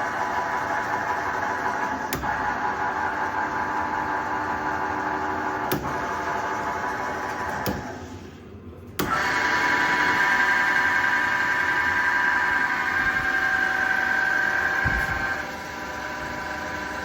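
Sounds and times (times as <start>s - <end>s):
drill press motor whine: 9.0s - 17.0s.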